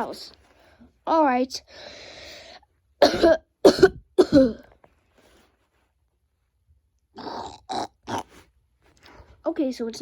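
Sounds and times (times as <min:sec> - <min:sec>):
person coughing: 0:03.0 - 0:04.7.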